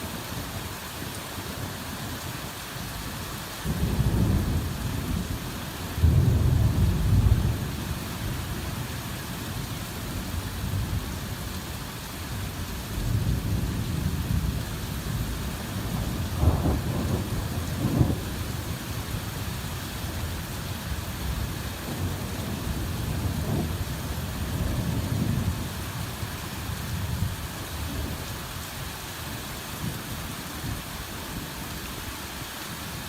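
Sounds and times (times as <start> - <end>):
hard rain falling: 0.0 - 33.0
thunder rumbling: 3.7 - 7.9, 13.0 - 19.4, 21.3 - 25.9.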